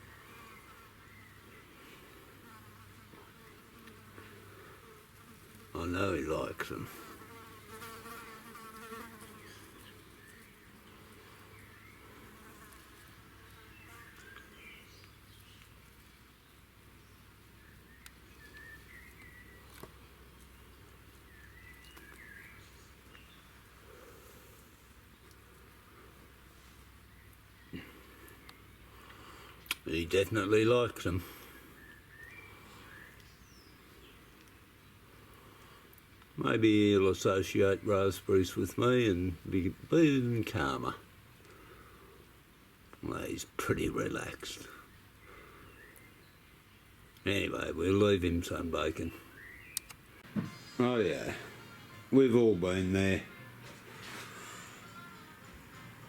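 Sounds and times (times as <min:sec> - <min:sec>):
fly buzzing: 0:06.9 - 0:09.9
faint bird chirps: 0:13.6 - 0:19.8, 0:20.4 - 0:23.6, 0:31.4 - 0:35.0, 0:44.8 - 0:47.2, 0:49.0 - 0:50.3.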